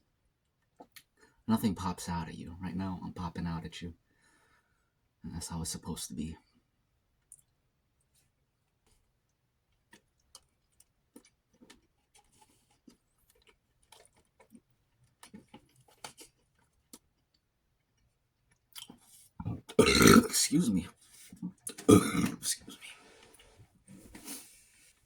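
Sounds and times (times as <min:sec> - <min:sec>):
person chewing food: 0:09.7 - 0:20.3.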